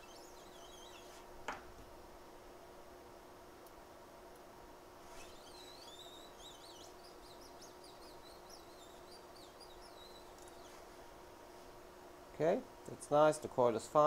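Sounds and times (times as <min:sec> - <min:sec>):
bird chirping and twittering: 0:00.0 - 0:01.2, 0:05.1 - 0:10.9
faint steady hum: 0:00.0 - 0:14.0.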